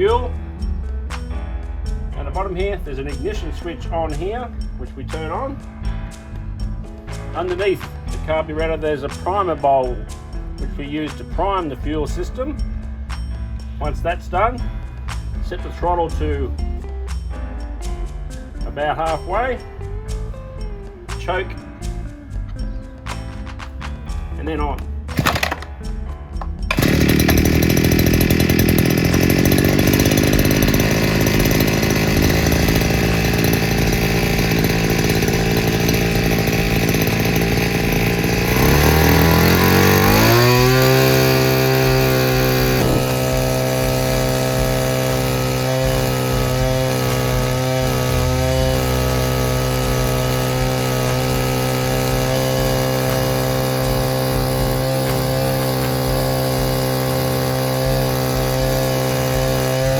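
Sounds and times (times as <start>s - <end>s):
small engine running at high revs: 24.7s - 59.9s.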